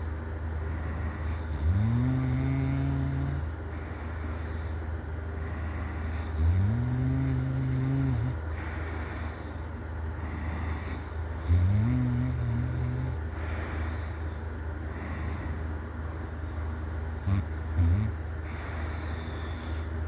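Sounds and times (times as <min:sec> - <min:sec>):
steady low hum: 0:00.0 - 0:20.0
person snoring: 0:00.9 - 0:03.6, 0:05.5 - 0:08.7, 0:10.4 - 0:13.6, 0:17.2 - 0:18.7
breathy exhale: 0:02.8 - 0:06.4, 0:07.8 - 0:11.6, 0:12.5 - 0:15.7, 0:18.4 - 0:20.0.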